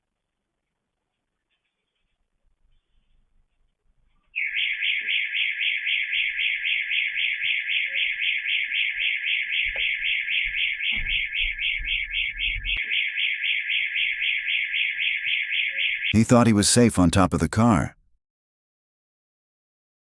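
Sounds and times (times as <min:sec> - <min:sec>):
pulsing electronic alarm: 0:04.4 - 0:16.1.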